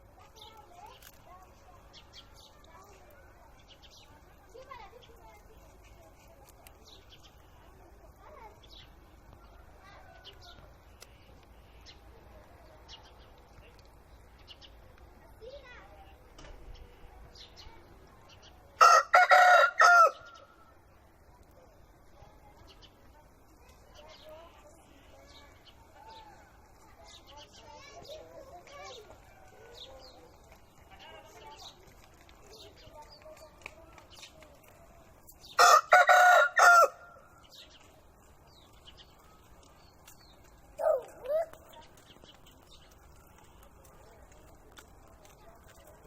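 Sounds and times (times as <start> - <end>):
rooster crowing: 18.8 - 20.3, 35.6 - 37.1.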